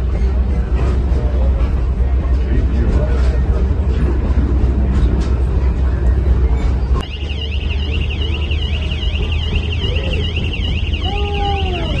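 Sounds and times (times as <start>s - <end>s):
train rumbling: 0.0s - 12.0s
electronic alarm warbling: 7.0s - 12.0s.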